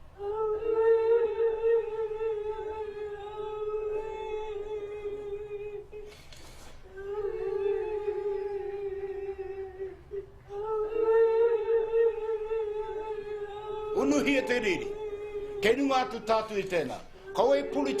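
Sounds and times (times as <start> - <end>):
quick breath drawn: 6.0 - 6.9.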